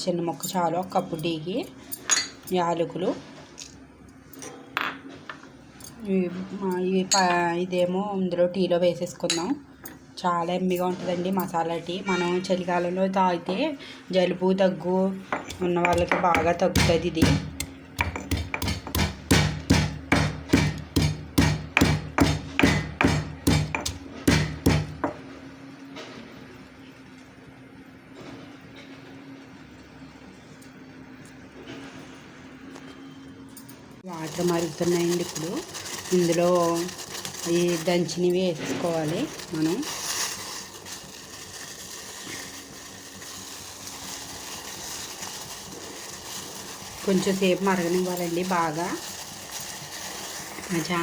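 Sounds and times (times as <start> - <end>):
pestle pounding in a mortar: 15.4 - 25.2
water boiling: 34.2 - 51.0.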